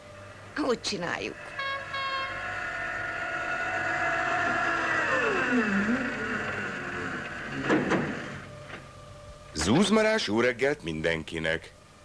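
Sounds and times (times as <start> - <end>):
horn-like chord sliding down: 0.0 - 7.8.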